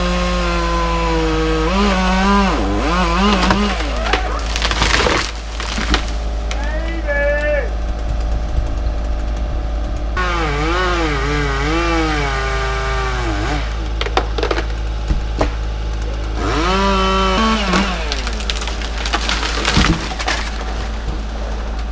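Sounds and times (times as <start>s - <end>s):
chainsaw cutting wood: 0.0s - 6.8s, 10.2s - 21.8s
wood cracking and splintering: 0.0s - 21.9s.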